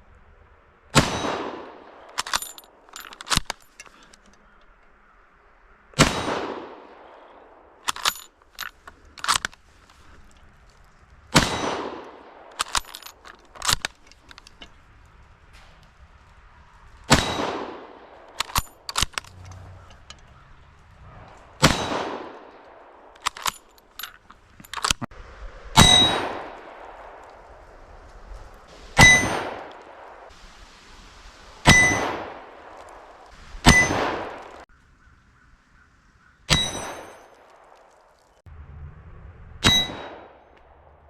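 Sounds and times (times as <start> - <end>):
bullets clanging on steel plate: 36.5 - 37.3.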